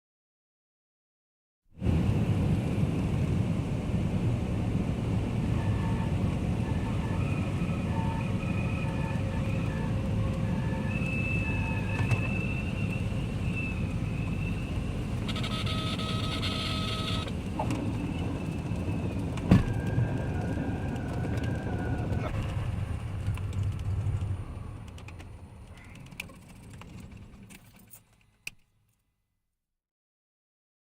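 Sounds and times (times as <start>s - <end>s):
propeller plane engines rumbling: 1.8s - 28.0s
thin whine: 5.4s - 24.9s.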